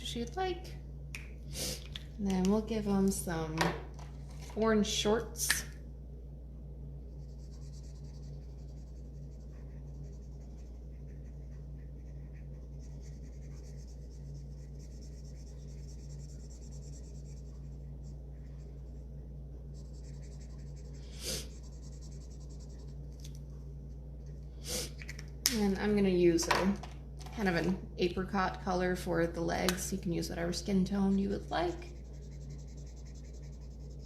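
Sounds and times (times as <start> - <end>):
low electrical hum: 0.0 - 34.0
marker scribbling on paper: 7.2 - 18.9, 19.8 - 22.9, 31.1 - 34.0.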